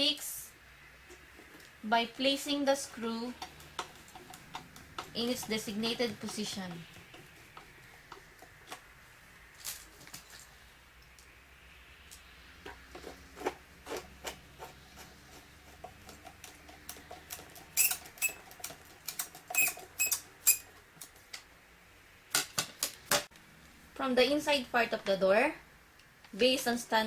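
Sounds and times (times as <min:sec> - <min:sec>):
screwdriver clicking on screws: 0:03.3 - 0:08.8.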